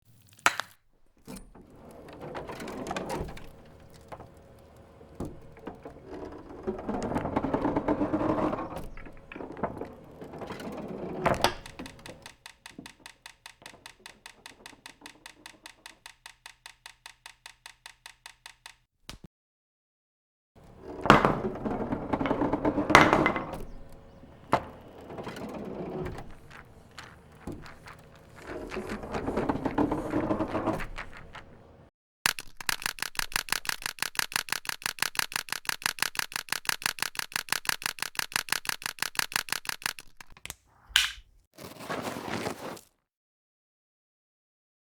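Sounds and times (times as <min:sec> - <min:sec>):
clattering and sharp knocks: 0:01.7 - 0:18.8
even ticks: 0:12.2 - 0:18.9, 0:32.3 - 0:40.6.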